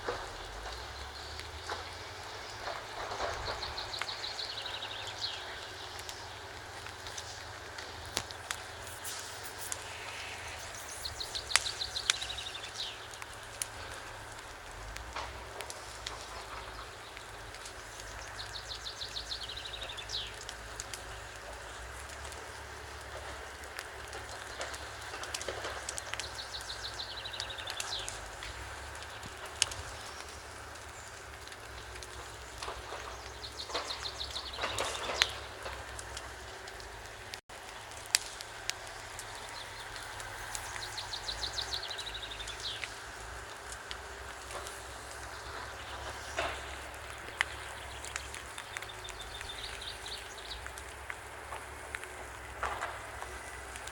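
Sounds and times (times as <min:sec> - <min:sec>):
steady low rumble: 0:00.0 - 0:18.8
faint clicks: 0:00.0 - 0:53.9
steady background noise: 0:00.0 - 0:53.9
songbird singing: 0:00.1 - 0:14.4, 0:15.7 - 0:23.3, 0:24.2 - 0:37.4, 0:38.7 - 0:52.2
sharp clicks: 0:06.8 - 0:14.4.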